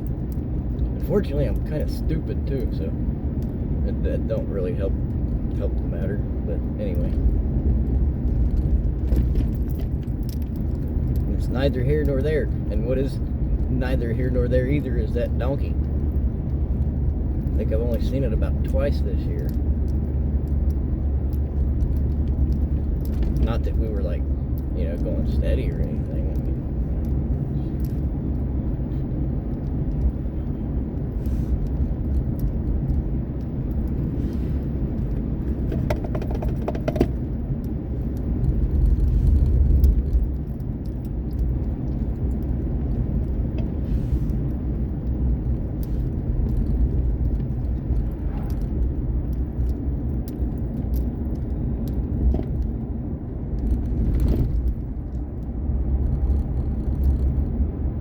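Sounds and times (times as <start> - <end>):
vehicle road and engine rumble: 0.0 - 58.0
light knocks and rattles: 6.8 - 13.9, 14.7 - 52.8.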